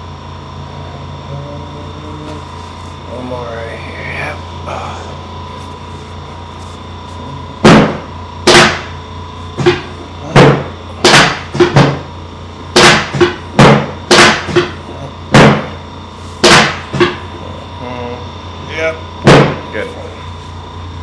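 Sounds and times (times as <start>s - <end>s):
steady low hum: 0.0s - 21.0s
sharp whacks on a back: 16.4s - 17.2s.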